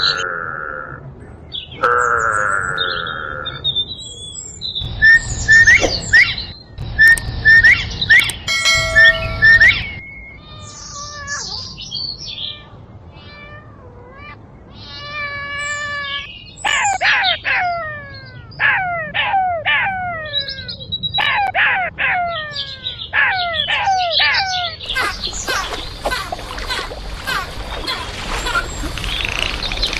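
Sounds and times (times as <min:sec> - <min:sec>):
cat chirping calls: 0:10.4 - 0:19.2
cat meowing: 0:12.4 - 0:16.3.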